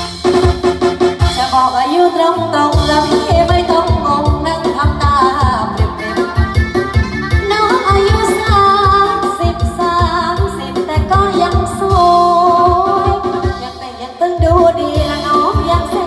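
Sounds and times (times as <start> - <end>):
person singing over a beat: 7.4 - 16.0.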